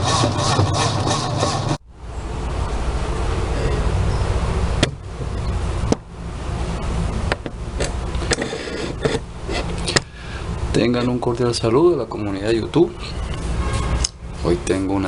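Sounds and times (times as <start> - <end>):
grinding rubbing noise: 0.0 - 1.8
washing machine spinning: 0.0 - 1.8.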